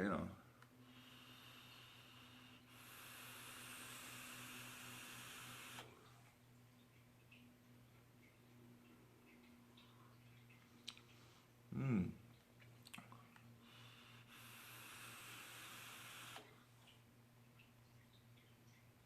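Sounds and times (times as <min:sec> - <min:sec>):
low mains hum: 0:00.0 - 0:19.0
vape hiss: 0:00.8 - 0:06.0, 0:13.7 - 0:16.6
throat sound: 0:11.7 - 0:12.2.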